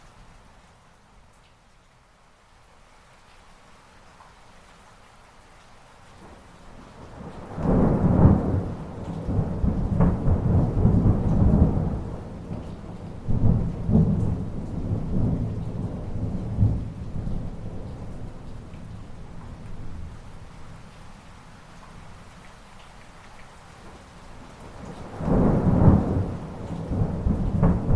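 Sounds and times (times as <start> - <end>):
rain: 0.0 - 27.9
rolling thunder: 7.2 - 18.4, 25.0 - 27.9.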